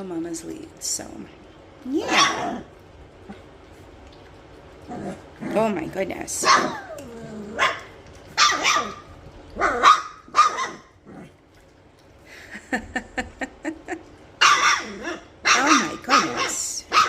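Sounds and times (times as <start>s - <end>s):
puppies yipping and barking: 7.6s - 10.9s.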